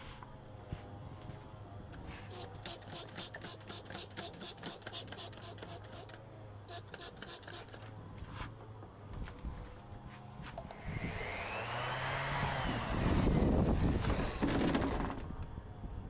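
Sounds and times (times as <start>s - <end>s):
sandpaper rasping on wood: 2.2s - 8.5s.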